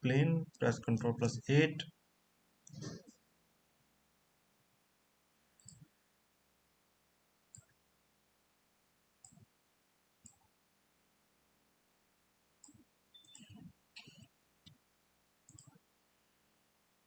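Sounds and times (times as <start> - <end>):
faint computer mouse clicks: 5.6 - 5.9, 7.5 - 7.8, 9.2 - 9.5, 10.2 - 10.5, 12.6 - 14.8, 15.5 - 15.8.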